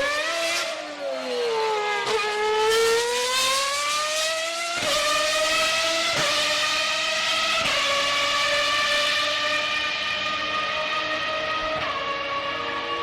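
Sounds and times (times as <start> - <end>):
racing car engine at high revs: 0.0 - 13.0.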